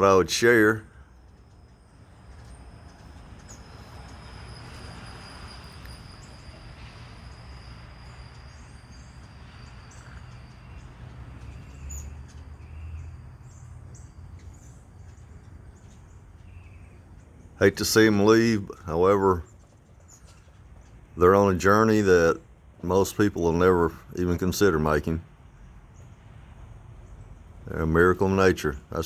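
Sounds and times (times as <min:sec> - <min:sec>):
high-pitched insect trill: 0:03.2 - 0:11.0.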